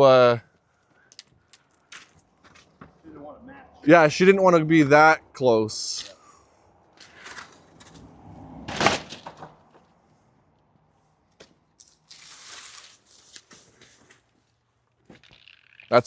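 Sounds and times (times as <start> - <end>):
handling rustle: 11.4 - 16.0.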